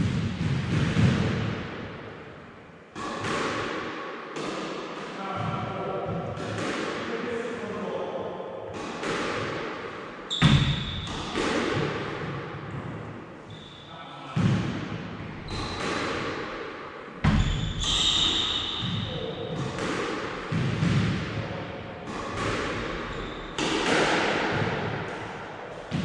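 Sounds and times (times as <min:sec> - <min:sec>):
squash ball hits echoing: 0:00.0 - 0:08.0, 0:08.7 - 0:13.6, 0:14.3 - 0:26.0
short high squeaks: 0:17.4 - 0:18.7.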